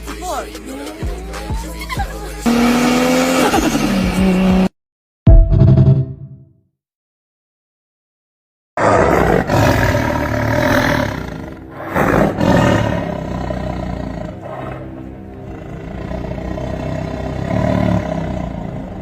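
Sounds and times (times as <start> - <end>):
car engine revving hard: 2.5 - 4.7, 16.7 - 18.7.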